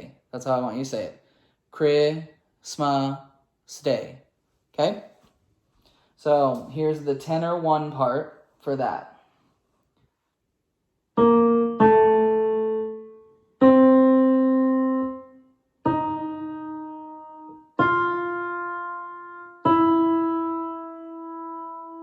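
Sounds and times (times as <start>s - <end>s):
piano notes ringing: 11.2s - 22.0s.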